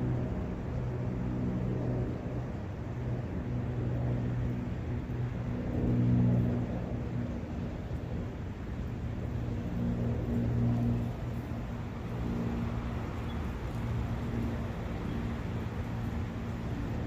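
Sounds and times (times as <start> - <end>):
low engine-like hum: 0.0 - 17.0
wind: 0.0 - 17.0
brook water rushing: 11.1 - 17.0.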